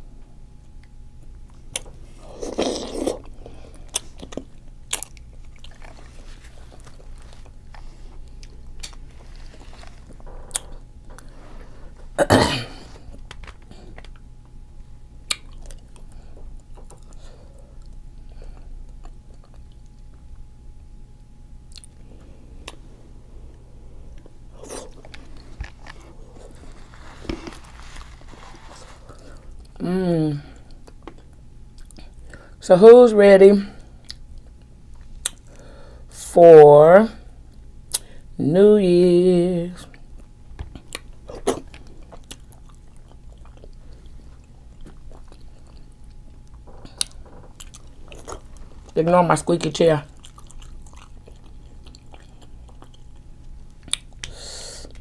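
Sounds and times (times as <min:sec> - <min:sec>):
close-miked chewing and biting: 0:01.5 - 0:10.8, 0:40.2 - 0:49.0, 0:50.1 - 0:54.3.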